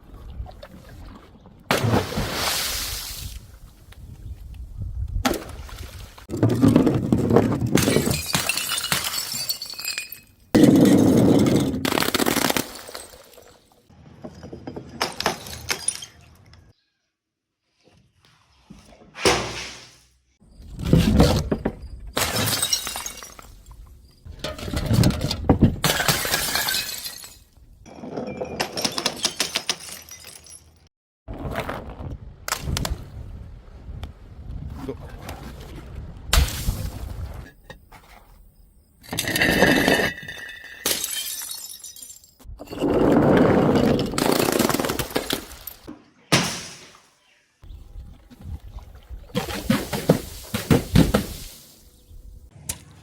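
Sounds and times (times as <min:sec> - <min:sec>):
glass bottles shattering: 0:07.7 - 0:13.7, 0:14.3 - 0:16.4, 0:22.2 - 0:23.8, 0:24.5 - 0:30.9, 0:39.0 - 0:46.9, 0:49.4 - 0:51.8.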